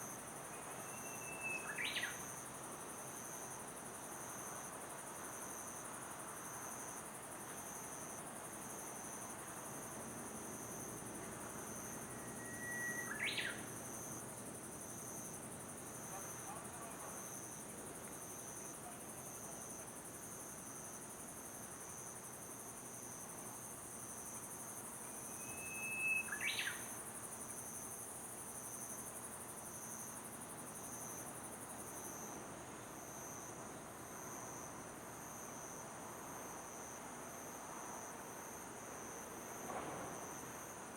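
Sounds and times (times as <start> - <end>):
insects trilling: 0.0 - 40.9
bird whistling call: 12.4 - 13.6, 25.4 - 26.8.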